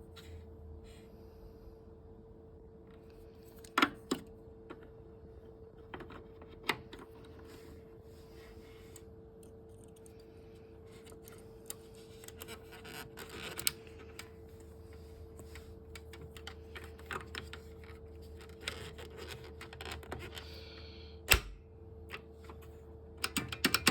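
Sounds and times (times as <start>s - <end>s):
steady hum: 0.0s - 23.3s
plastic clicks and scrapes: 10.9s - 14.3s, 15.5s - 20.4s.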